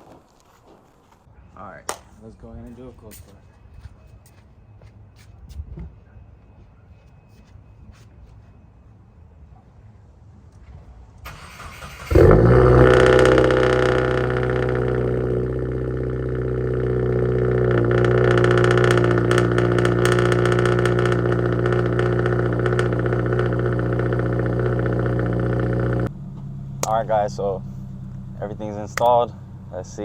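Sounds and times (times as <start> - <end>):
car engine idling: 11.3 - 30.0
engine cranking: 11.3 - 30.0.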